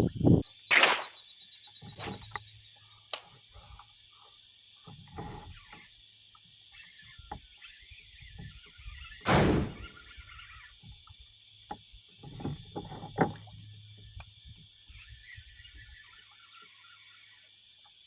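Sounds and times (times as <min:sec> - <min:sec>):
high drone of insects: 0:13.7 - 0:18.0.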